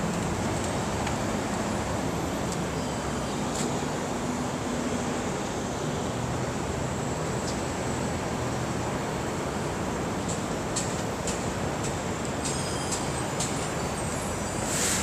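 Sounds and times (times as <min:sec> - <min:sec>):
subway train rumbling: 0:08.0 - 0:15.0.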